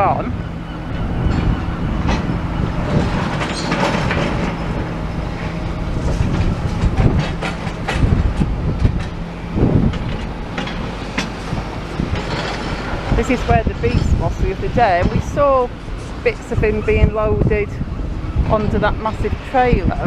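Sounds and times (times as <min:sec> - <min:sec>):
diesel engines running: 0:00.0 - 0:20.0
concrete and metal clanking: 0:01.2 - 0:15.2.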